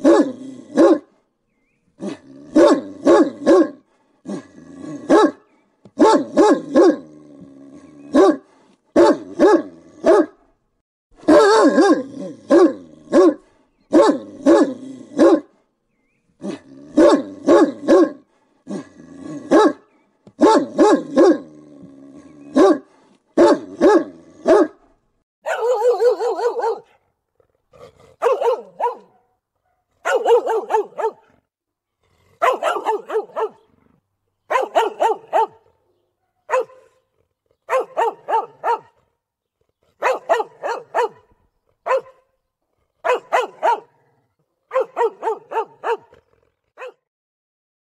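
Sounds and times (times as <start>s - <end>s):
dog barking aggressively: 0.0s - 1.1s, 2.0s - 5.4s, 6.0s - 7.1s, 8.1s - 10.4s, 11.2s - 15.5s, 16.5s - 18.3s, 19.3s - 19.8s, 20.4s - 21.5s, 22.5s - 24.8s, 25.4s - 27.0s, 27.9s - 31.4s, 32.3s - 33.7s, 34.5s - 37.0s, 37.6s - 39.0s, 40.0s - 42.3s, 43.0s - 44.1s, 44.7s - 46.2s, 46.8s - 47.0s.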